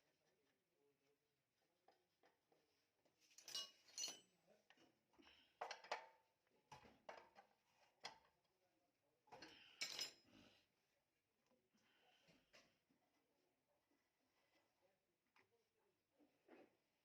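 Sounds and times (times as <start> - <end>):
metal tools clinking: 3.4 - 4.4, 9.8 - 10.2.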